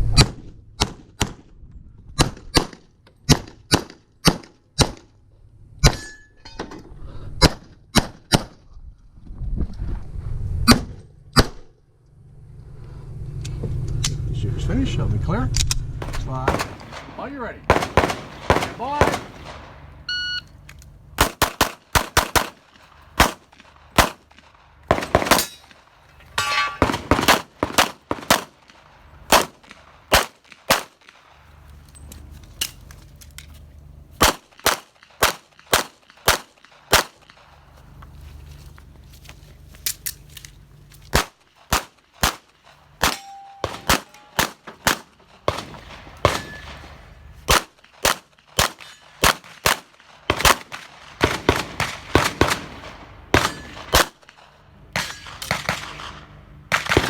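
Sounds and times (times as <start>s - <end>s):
rapid pistol shots: 16.0s - 19.9s, 21.2s - 25.8s, 26.6s - 31.3s, 34.2s - 37.5s, 41.1s - 57.0s
shot timer beep: 20.1s - 20.5s.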